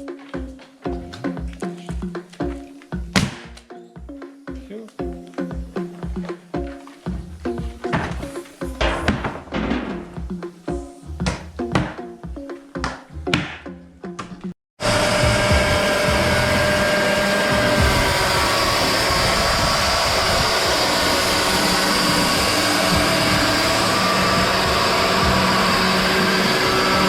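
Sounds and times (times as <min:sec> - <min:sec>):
faint steady whining tones: 0:14.8 - 0:27.0
woodworking machinery running: 0:14.8 - 0:27.0.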